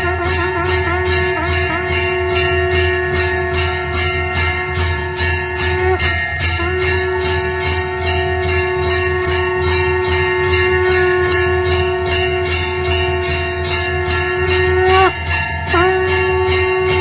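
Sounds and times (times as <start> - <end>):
temple bell rung rapidly: 0.0 - 17.0.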